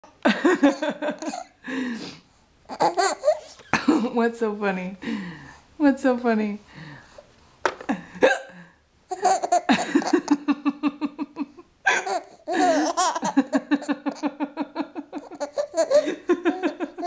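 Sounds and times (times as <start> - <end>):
baby laughing: 0.6 - 1.5, 2.7 - 3.8, 9.1 - 10.5, 11.9 - 14.4, 15.0 - 17.0.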